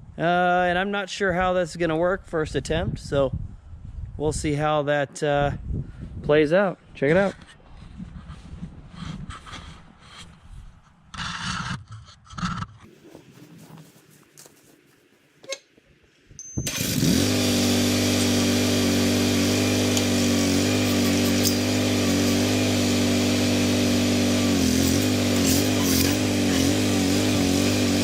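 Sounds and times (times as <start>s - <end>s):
engine starting and running: 16.6s - 28.0s.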